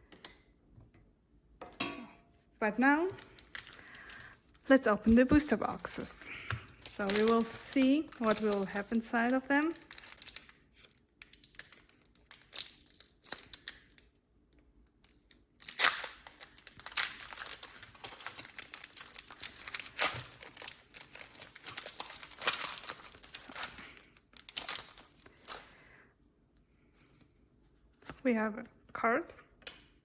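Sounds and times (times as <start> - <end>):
foil wrapper crinkling: 3.1 - 14.2, 15.0 - 25.7
wrapper tearing: 6.7 - 14.2, 15.0 - 25.7.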